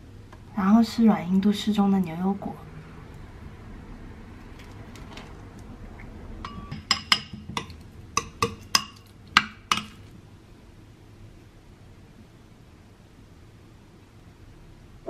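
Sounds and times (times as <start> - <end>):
metal utensil clinking on dishware: 6.5 - 9.0.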